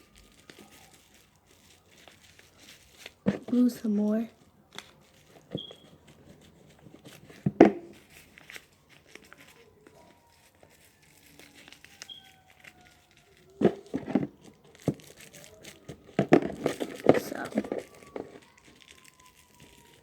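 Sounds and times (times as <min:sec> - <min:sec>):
plastic bag and paper crinkling: 0:00.0 - 0:20.0.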